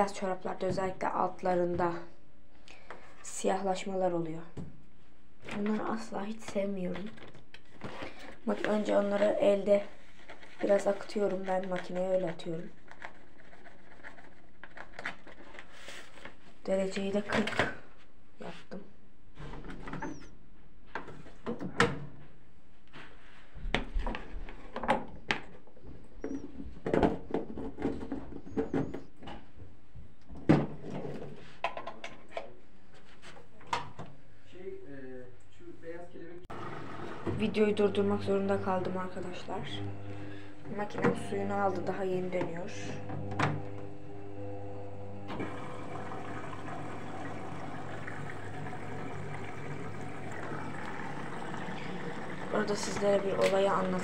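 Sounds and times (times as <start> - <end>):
washing machine motor hum: 36.5 - 54.0.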